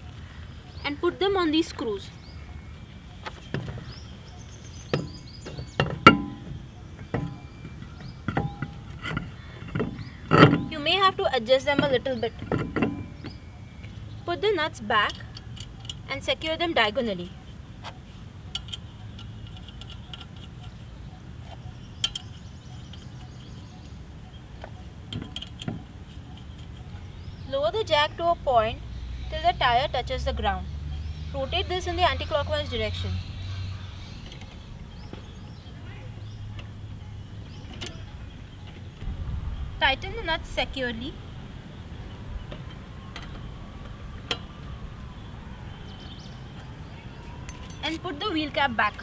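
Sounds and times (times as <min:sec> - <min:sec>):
metallic clinks of wheel nuts: 0:02.9 - 0:28.3, 0:47.3 - 0:49.0
metallic knocks of wheel on studs: 0:04.8 - 0:13.5
low steady hum: 0:34.2 - 0:46.4.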